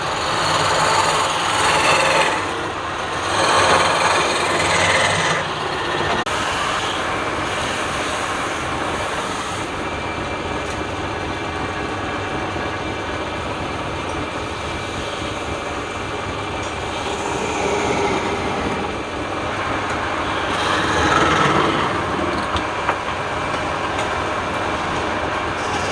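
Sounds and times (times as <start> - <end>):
power tool grinding wood: 0.0 - 7.8.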